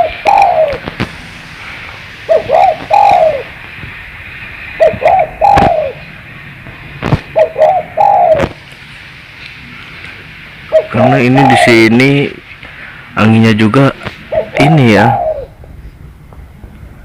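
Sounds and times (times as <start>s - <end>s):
dove cooing: 0.0s - 0.9s, 2.3s - 3.6s, 4.8s - 6.1s, 7.2s - 8.6s, 10.7s - 12.0s, 14.2s - 15.6s.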